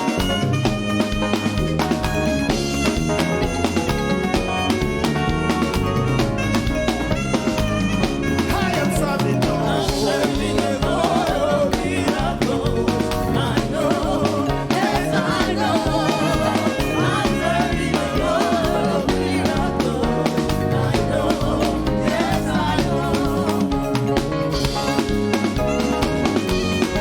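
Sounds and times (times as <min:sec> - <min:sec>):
gospel band playing: 0:00.0 - 0:27.0
singers singing: 0:08.3 - 0:24.3.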